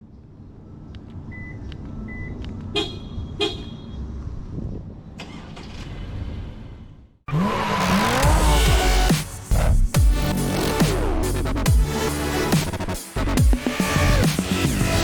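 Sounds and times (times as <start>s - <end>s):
car horn chirps: 2.7s - 4.0s
loud electronic music: 7.3s - 15.0s.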